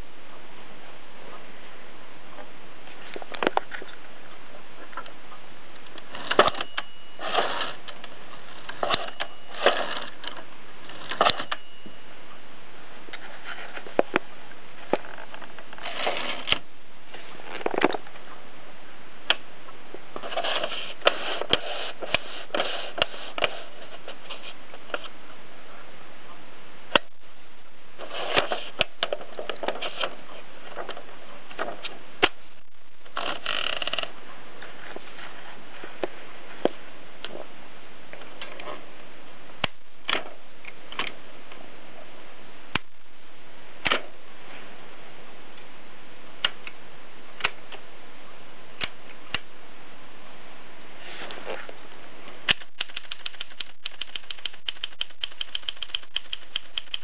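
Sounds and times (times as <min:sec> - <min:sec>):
steady hiss: 0:15.8 - 0:52.7
typewriter mechanism rattling: 0:52.5 - 0:57.0.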